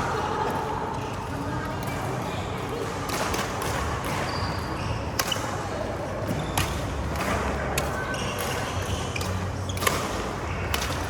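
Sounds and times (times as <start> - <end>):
shoes squeaking on court floor: 4.0 - 5.4
racket hitting shuttlecock: 6.6 - 11.0.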